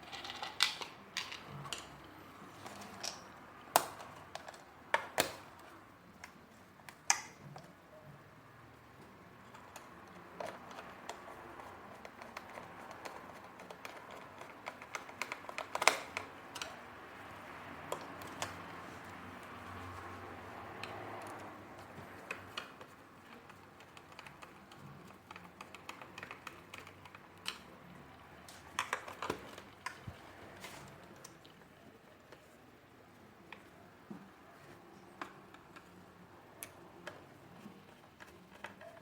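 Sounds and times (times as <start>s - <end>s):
plastic parts clicking: 0.0s - 7.8s, 9.4s - 32.5s.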